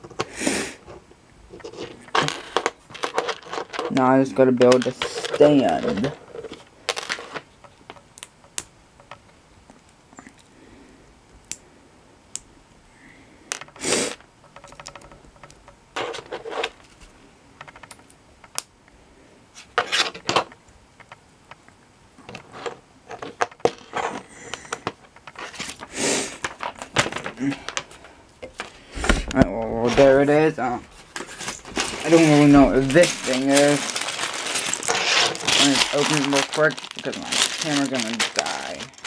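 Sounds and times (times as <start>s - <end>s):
plastic pieces rattling: 1.6s - 8.0s, 13.6s - 16.8s, 22.3s - 28.7s, 29.9s - 39.0s
plastic bricks clicking: 13.5s - 16.1s.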